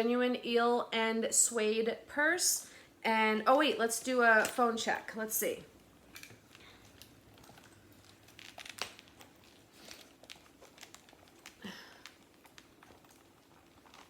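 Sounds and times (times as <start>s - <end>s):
purse rustling and clicking: 6.0s - 14.0s.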